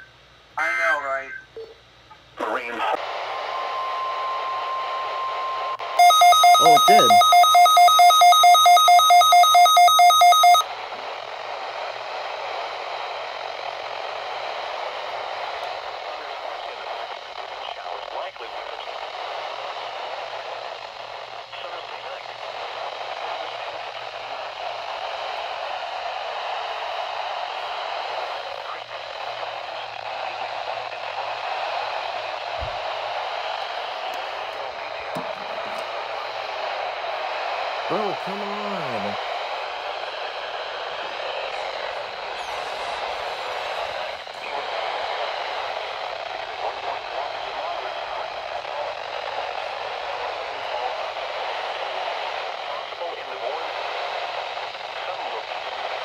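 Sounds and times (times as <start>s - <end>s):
radio static hiss: 0.0s - 56.0s
electronic alarm beeping: 3.6s - 10.7s.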